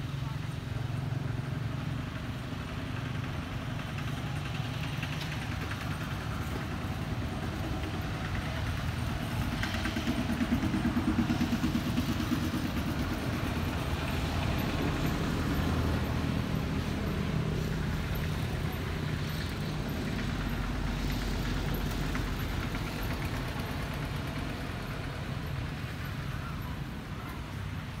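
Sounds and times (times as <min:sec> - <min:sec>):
vehicle engine rumbling: 0:00.0 - 0:28.0.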